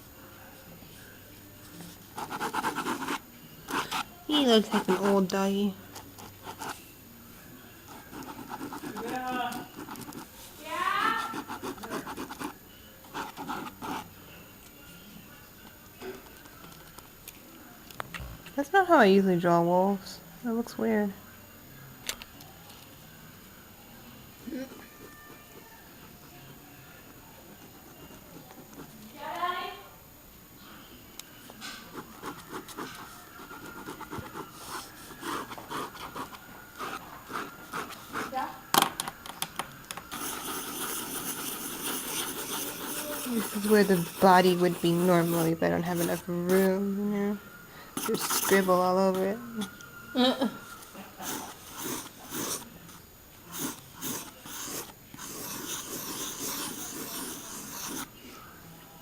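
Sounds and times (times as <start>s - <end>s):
pencil scratching on paper: 2.1s - 5.3s, 6.2s - 6.8s, 7.9s - 10.4s, 11.1s - 14.0s, 31.9s - 38.4s, 40.1s - 46.8s, 48.0s - 49.3s, 51.2s - 52.7s, 53.5s - 58.1s.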